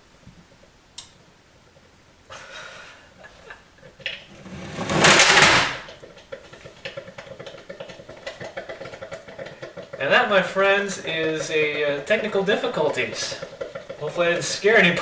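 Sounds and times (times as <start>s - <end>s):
object falling with crash: 4.3s - 5.9s.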